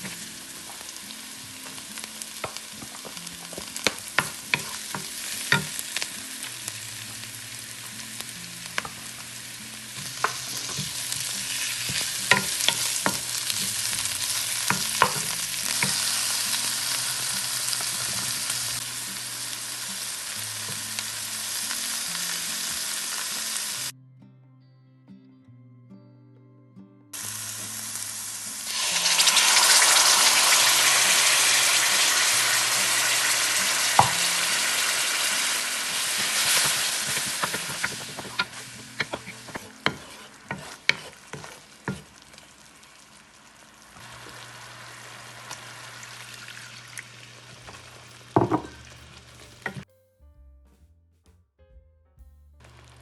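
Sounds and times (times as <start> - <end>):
food sizzling in a pan: 0.0 - 23.9, 27.2 - 49.9, 52.6 - 53.0
soft background music: 0.0 - 42.0, 47.7 - 53.0
utensil tapping against pan: 2.4 - 5.8, 14.6 - 16.0.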